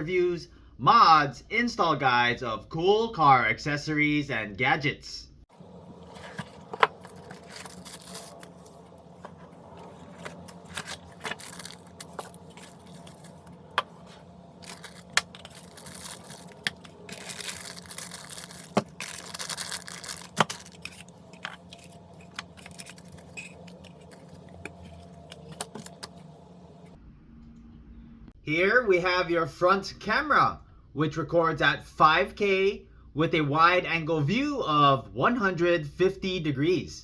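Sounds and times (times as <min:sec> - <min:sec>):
packaging rustling and tearing: 0:05.6 - 0:26.4.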